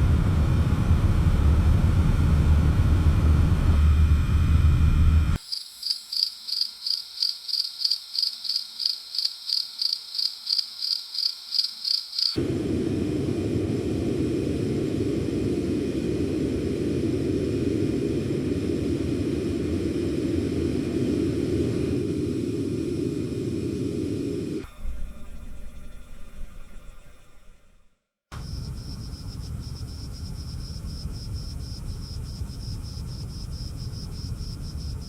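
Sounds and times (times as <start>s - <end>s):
high insect chirping: 5.4s - 12.4s, 28.7s - 35.0s
steady low rumbling: 12.4s - 27.0s.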